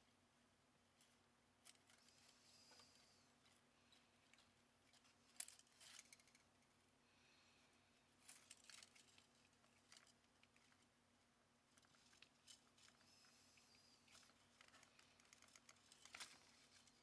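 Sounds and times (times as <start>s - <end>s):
faint steady hum: 0.0s - 17.0s
small parts and tools rattling: 1.6s - 6.6s, 8.2s - 10.8s, 11.7s - 13.4s, 14.0s - 17.0s.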